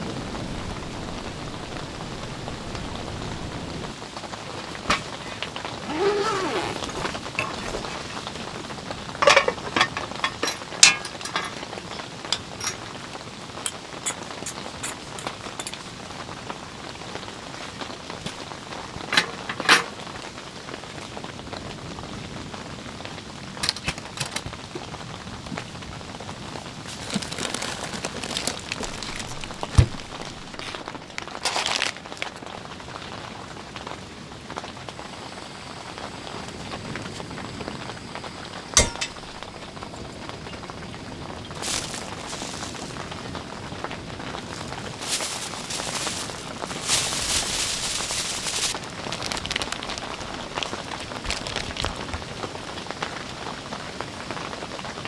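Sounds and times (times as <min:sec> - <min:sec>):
steady rain: 0:00.0 - 0:06.6, 0:20.0 - 0:23.6.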